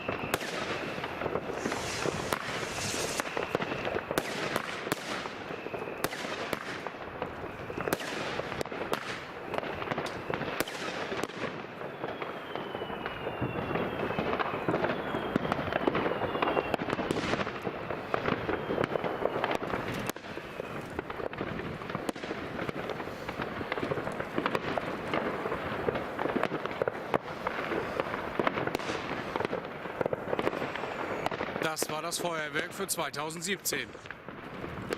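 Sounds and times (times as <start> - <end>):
firework whistles falling in pitch: 0.0 - 21.0, 30.3 - 31.4
firecrackers crackling: 0.0 - 34.9
firework bangs: 0.0 - 34.9.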